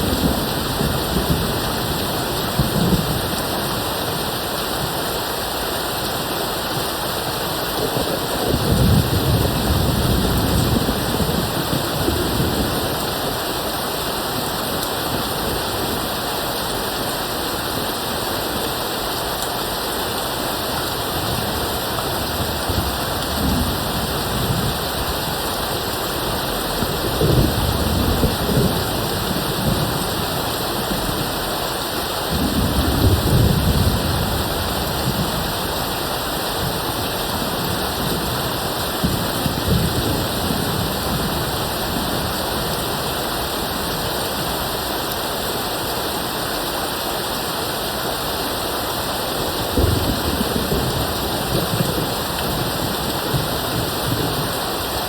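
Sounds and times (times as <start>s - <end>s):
steady rain: 0.0s - 55.0s
distant thunder rumbles: 7.9s - 13.4s, 21.3s - 31.4s.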